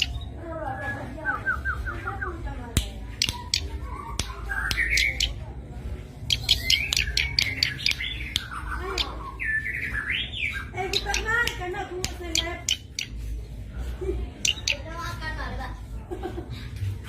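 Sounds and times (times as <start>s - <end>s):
bird singing clicking notes: 0.0s - 0.2s, 2.8s - 5.4s, 6.3s - 9.2s, 10.9s - 13.2s, 14.4s - 14.9s.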